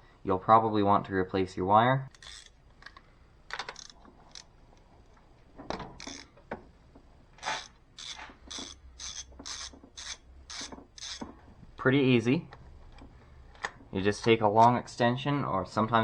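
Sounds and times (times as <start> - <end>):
ratchet wrench strokes: 2.1 - 2.6, 3.8 - 4.4, 6.0 - 6.3, 7.4 - 11.3
tool clicks and knocks: 5.6 - 11.8.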